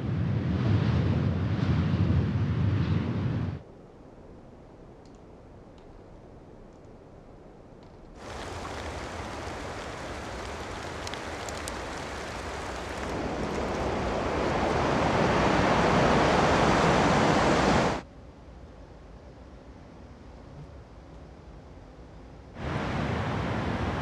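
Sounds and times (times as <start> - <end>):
wind blowing hard: 8.2 - 18.0, 22.6 - 24.0.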